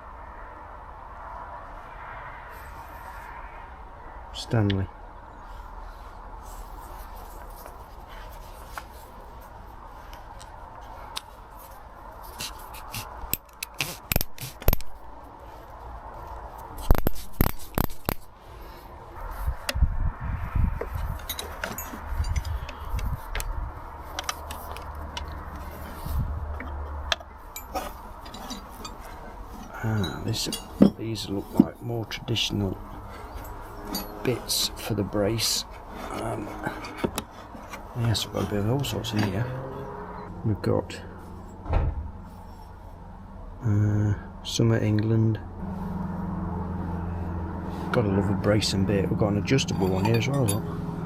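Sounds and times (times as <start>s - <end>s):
metal tools rummaged in wooden box: 21.0s - 22.9s, 27.5s - 31.8s, 49.6s - 50.7s.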